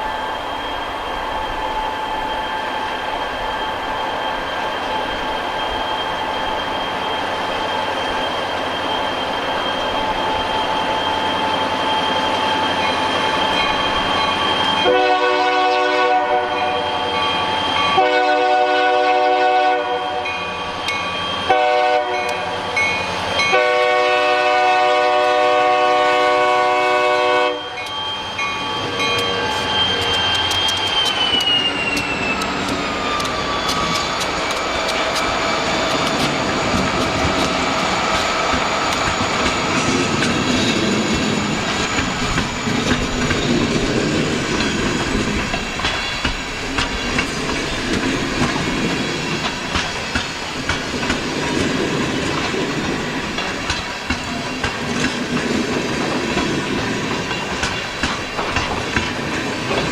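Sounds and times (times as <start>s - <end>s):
diesel locomotive engine: 0.0s - 59.9s
train air horn blasts: 14.8s - 16.9s, 17.9s - 20.4s, 21.4s - 22.5s, 23.5s - 27.8s.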